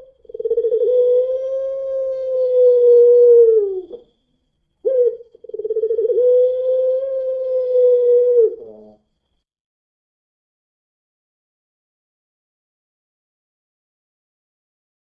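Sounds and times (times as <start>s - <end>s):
dove cooing: 0.0s - 4.1s, 4.8s - 9.0s.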